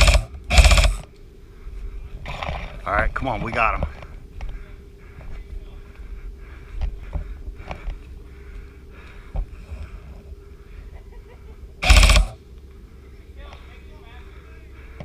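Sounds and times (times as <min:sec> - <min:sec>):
airsoft rifle full-auto burst: 0:00.0 - 0:01.1, 0:11.8 - 0:12.4
footsteps: 0:01.5 - 0:10.4.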